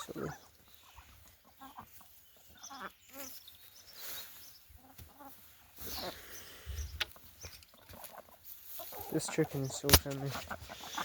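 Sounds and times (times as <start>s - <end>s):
chickens clucking: 0.0s - 11.0s.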